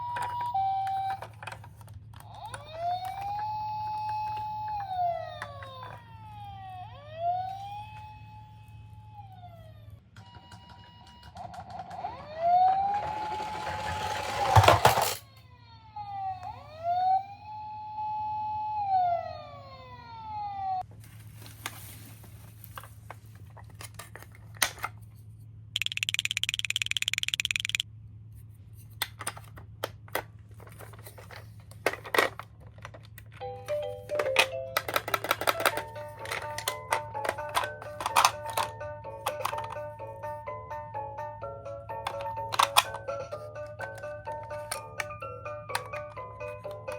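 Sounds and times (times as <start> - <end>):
toy siren wailing: 0.0 - 1.6, 2.2 - 14.7, 15.4 - 20.8
buzzing electronic tone: 25.8 - 27.8
plastic clicks: 25.8 - 27.8, 34.1 - 39.8, 42.0 - 43.1.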